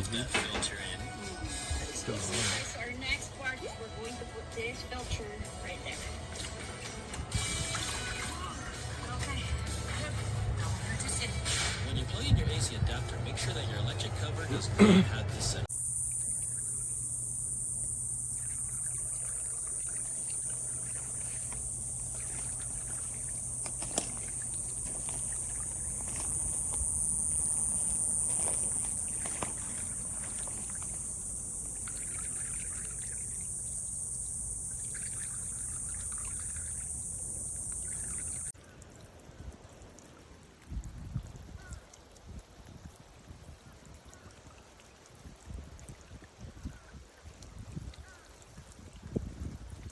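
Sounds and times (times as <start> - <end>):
fountain pump humming: 15.6 - 40.6
water trickling: 15.6 - 49.9
high-pitched whine: 15.7 - 38.5.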